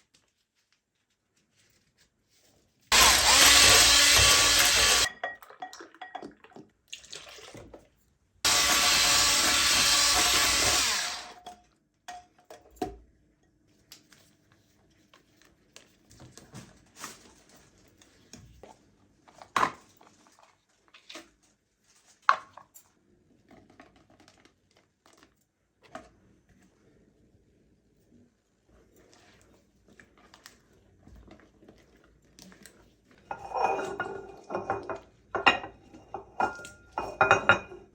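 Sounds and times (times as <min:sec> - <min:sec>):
small electric motor running: 0:02.9 - 0:05.1, 0:08.5 - 0:11.4.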